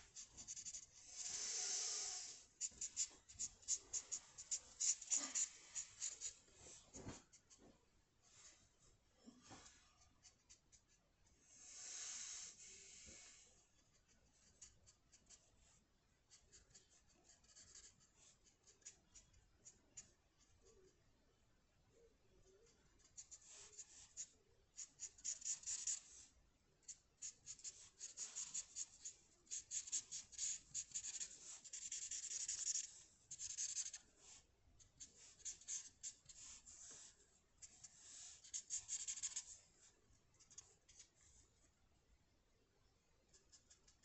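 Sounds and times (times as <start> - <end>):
pencil scratching on paper: 0.0 - 6.6, 10.0 - 11.0, 13.8 - 20.8, 22.6 - 39.6, 40.4 - 41.4, 43.3 - 44.0.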